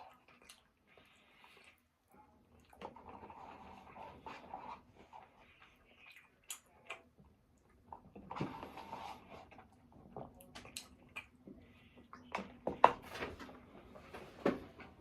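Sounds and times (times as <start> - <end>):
wet chewing smacks and clicks: 0.0 - 1.9, 5.2 - 8.2, 9.6 - 12.6.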